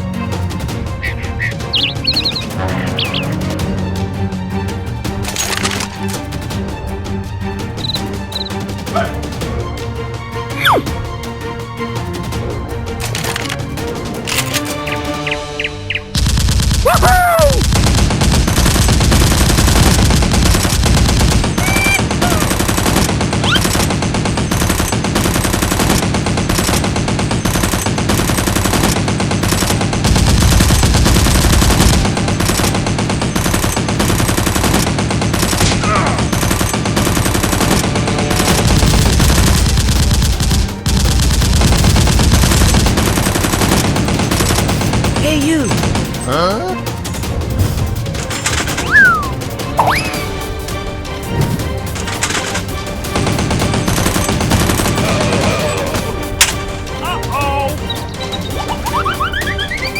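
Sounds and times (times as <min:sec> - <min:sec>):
rapid automatic gunfire: 0:16.1 - 0:16.9, 0:17.6 - 0:46.2, 0:52.0 - 0:56.1.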